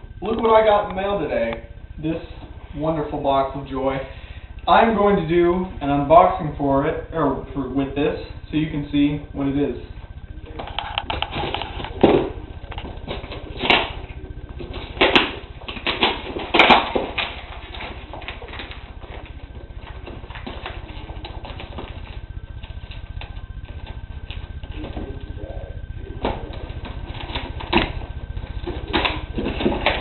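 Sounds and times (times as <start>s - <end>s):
cardboard crackling and clicking: 10.5s - 25.4s, 26.2s - 30.0s.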